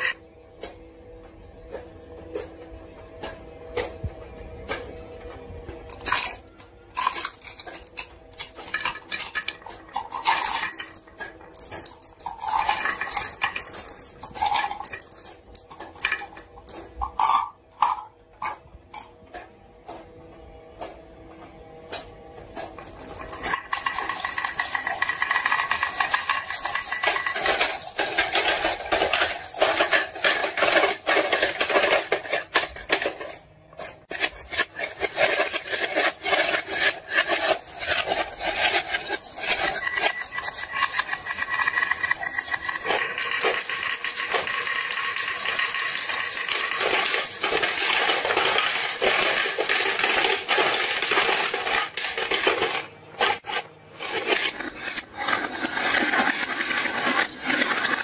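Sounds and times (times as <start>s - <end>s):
marbles rattling down a run: 7.0s - 16.6s, 23.4s - 33.2s, 34.5s - 53.4s.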